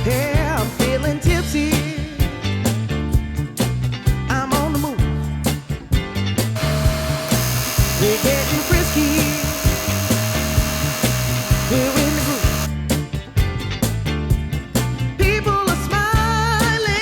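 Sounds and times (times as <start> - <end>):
music with bass and singing: 0.0 - 17.0
machine hiss with hum: 6.6 - 12.7.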